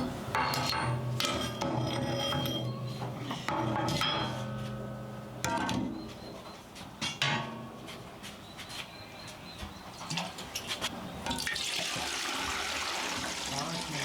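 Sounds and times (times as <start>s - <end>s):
water pouring: 11.3s - 14.0s.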